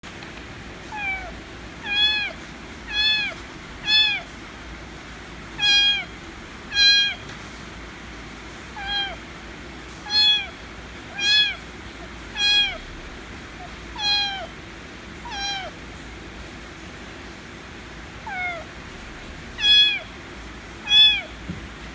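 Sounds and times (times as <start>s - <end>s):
kitten meowing: 0.9s - 4.3s, 5.6s - 7.2s, 8.7s - 9.2s, 10.0s - 13.0s, 13.6s - 14.6s, 15.2s - 15.8s, 18.2s - 18.8s, 19.5s - 20.1s, 20.8s - 21.4s.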